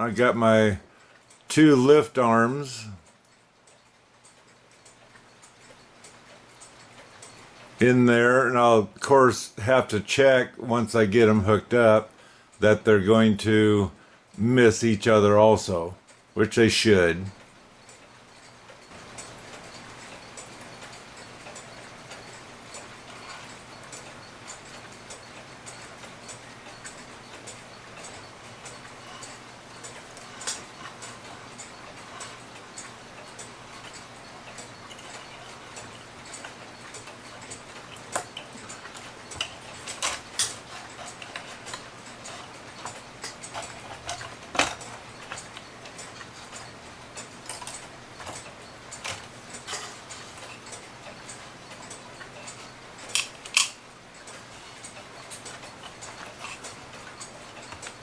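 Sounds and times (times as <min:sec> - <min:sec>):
mechanical clock ticking: 0:00.0 - 0:58.0
clock parts clicking and knocking: 0:17.4 - 0:58.0.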